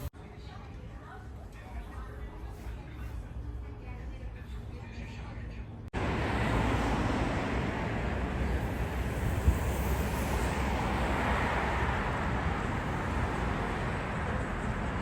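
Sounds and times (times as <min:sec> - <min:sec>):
traffic noise: 0:05.8 - 0:15.0.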